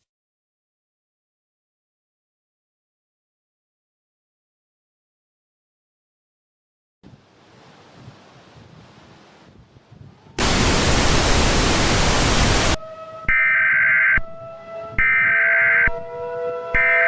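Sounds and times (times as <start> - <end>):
faint hiss: 10.4 - 12.8
tv static burst: 10.4 - 12.8.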